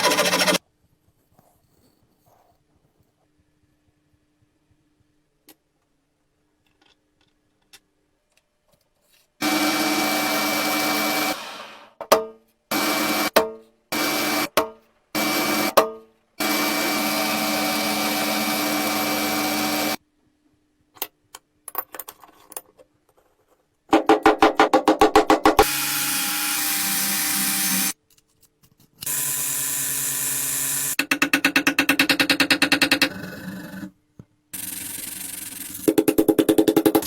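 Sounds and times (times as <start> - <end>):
power tool motor running: 0.0 - 0.6, 9.4 - 11.8, 12.7 - 13.3, 16.4 - 20.0, 25.6 - 28.0, 29.1 - 31.0.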